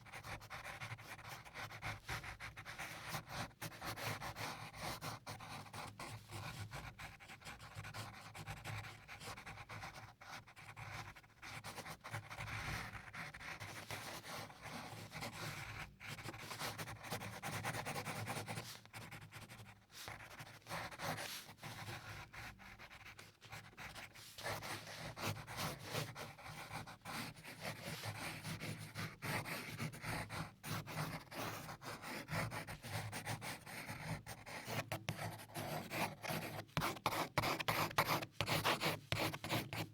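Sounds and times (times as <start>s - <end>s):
pencil scratching on paper: 0.0s - 39.9s.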